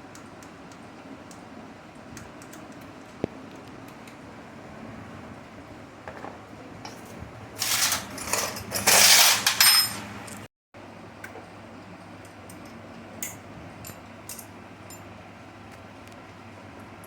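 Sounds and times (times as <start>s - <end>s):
metal tools clattering: 6.9s - 10.5s.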